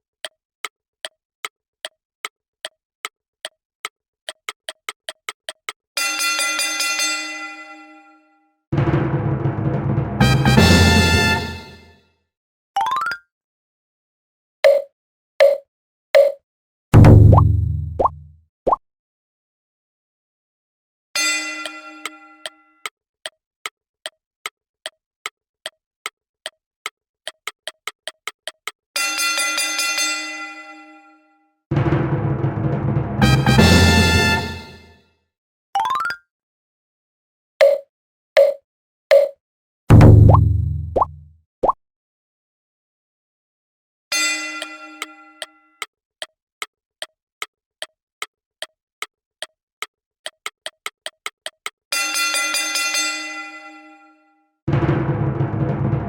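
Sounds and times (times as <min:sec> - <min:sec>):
clock-like ticking: 0:04.3 - 0:05.8, 0:26.4 - 0:28.8, 0:37.6 - 0:37.8, 0:38.4 - 0:39.4, 0:49.4 - 0:51.8
ringing bell-like chime: 0:44.2 - 0:45.8.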